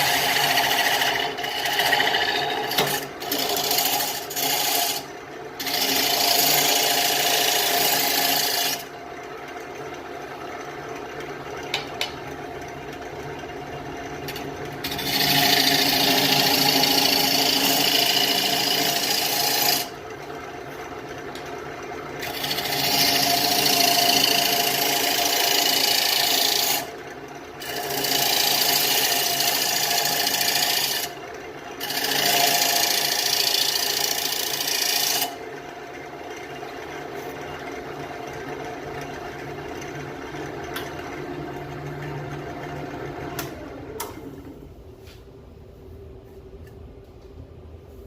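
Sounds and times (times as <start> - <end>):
turning tool scraping wood: 0.0 - 8.9, 14.3 - 19.9, 22.2 - 26.9, 27.6 - 31.1, 31.8 - 35.4
lathe motor running: 0.0 - 44.3.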